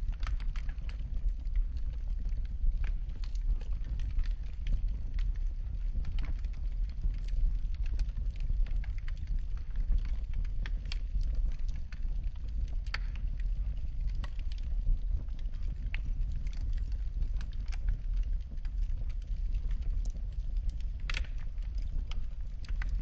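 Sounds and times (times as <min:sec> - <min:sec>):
wood fire crackling: 0:00.0 - 0:23.0.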